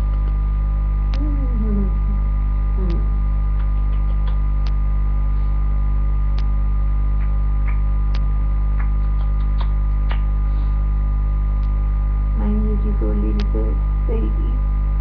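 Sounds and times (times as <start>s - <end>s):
electrical mains hum: 0.0s - 15.0s
faint clicks: 3.6s - 4.8s.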